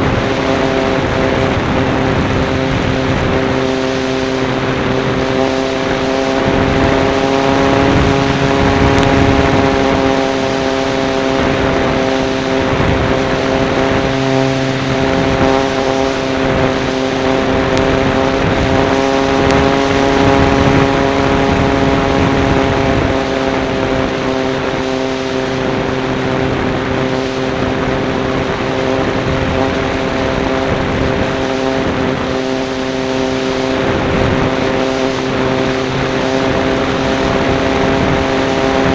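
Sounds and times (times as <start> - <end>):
model plane motor and propeller: 0.0 - 38.9
rushing air: 0.0 - 38.9.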